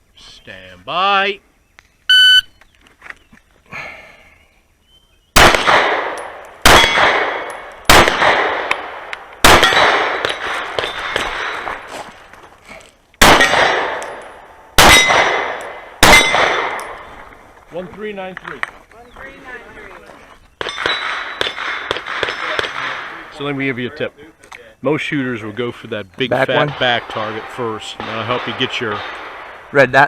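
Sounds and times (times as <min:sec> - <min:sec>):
pistol shots: 0:05.4 - 0:11.9, 0:13.2 - 0:17.4, 0:20.6 - 0:23.2, 0:26.5 - 0:29.8
steel target ringing clang: 0:13.4 - 0:17.1.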